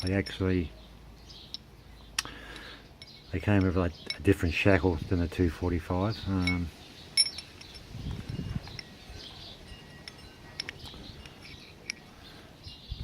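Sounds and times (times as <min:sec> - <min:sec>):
padlock metal clinking: 0:00.0 - 0:00.5, 0:02.6 - 0:04.6, 0:06.2 - 0:12.3.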